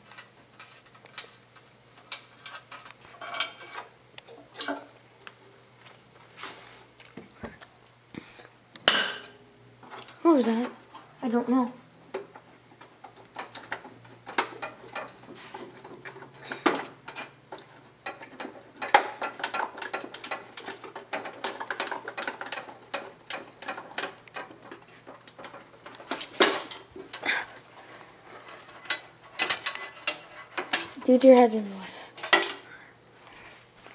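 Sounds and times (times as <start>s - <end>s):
hand tools clicking on metal: 16.0s - 27.2s.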